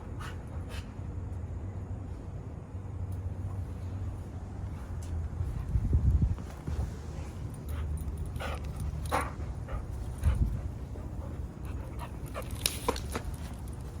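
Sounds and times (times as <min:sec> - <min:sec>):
dogs panting: 0:07.1 - 0:14.0.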